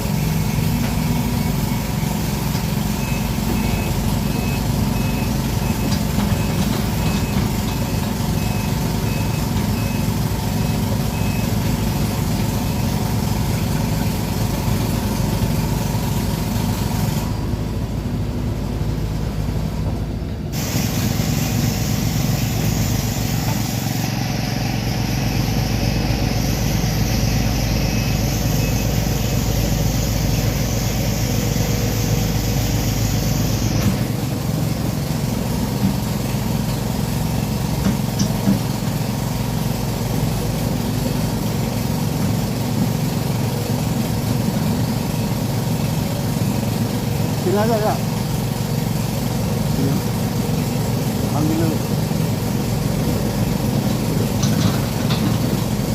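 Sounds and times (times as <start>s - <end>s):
excavator diesel engine running: 0.0s - 55.9s
warning beeper: 24.7s - 31.0s.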